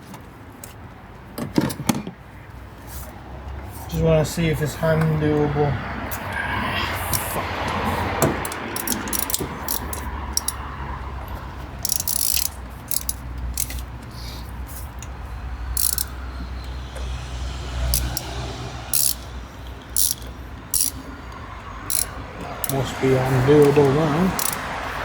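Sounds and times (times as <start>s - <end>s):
ratchet clicking: 8.4s - 10.6s, 11.6s - 14.1s, 14.8s - 17.2s, 17.9s - 25.0s.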